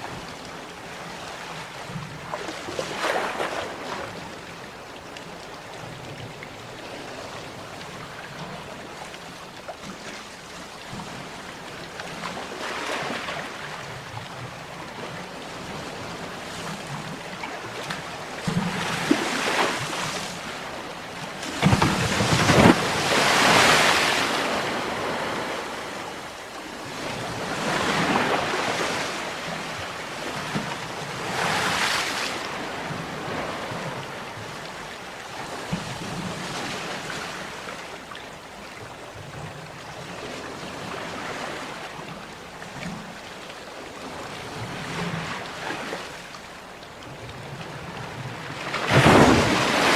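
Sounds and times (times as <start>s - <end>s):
ocean waves breaking: 15.0s - 34.5s, 47.6s - 49.9s.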